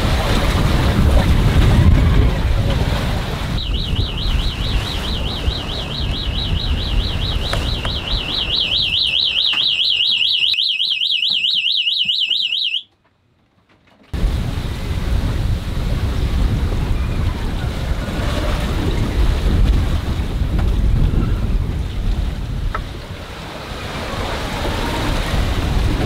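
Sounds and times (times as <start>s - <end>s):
sea noise: 0.0s - 12.8s, 14.2s - 26.0s
wind: 0.0s - 26.0s
warbling electronic alarm: 3.5s - 12.9s.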